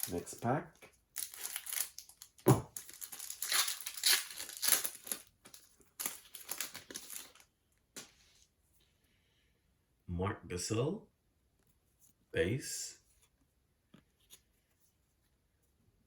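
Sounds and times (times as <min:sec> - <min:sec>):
foil wrapper tearing and crinkling: 0:01.2 - 0:07.4.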